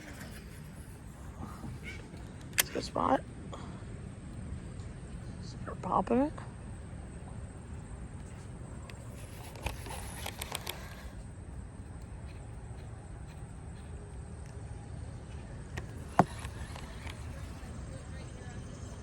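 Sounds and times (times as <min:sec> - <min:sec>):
faint clicks: 0:06.7 - 0:17.9.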